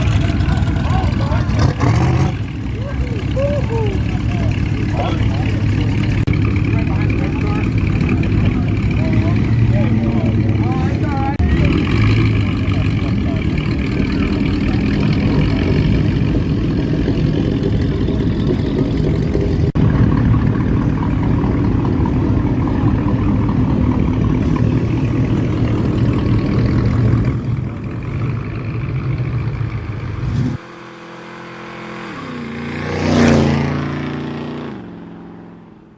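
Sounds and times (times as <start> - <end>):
car engine with deep exhaust rumble: 0.0 - 35.9
car passing by: 30.1 - 34.8.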